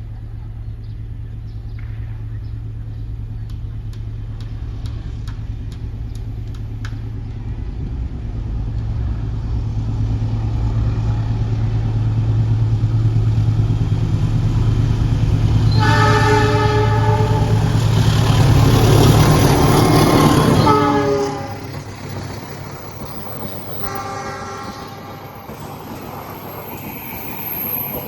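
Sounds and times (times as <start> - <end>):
locomotive engine drone: 0.0 - 28.0
train passing close by: 3.4 - 28.0
locomotive horn: 15.6 - 18.0, 20.2 - 21.8, 23.8 - 25.5.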